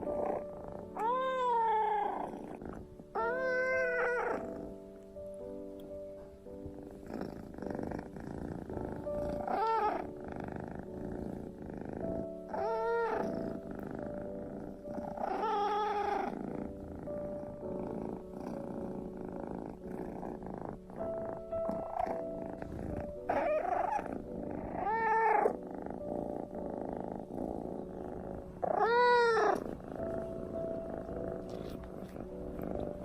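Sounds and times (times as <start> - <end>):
cat purring: 0.0 - 33.0
soft background music: 0.0 - 33.0
cat meowing: 0.9 - 2.2, 3.2 - 4.4, 12.5 - 13.3, 24.8 - 25.5, 28.6 - 29.6.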